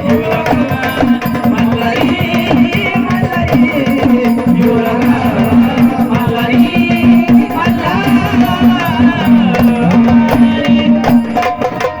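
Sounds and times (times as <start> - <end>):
rapid drum and rattle strokes: 0.0 - 12.0
wavering melody line: 2.8 - 9.9.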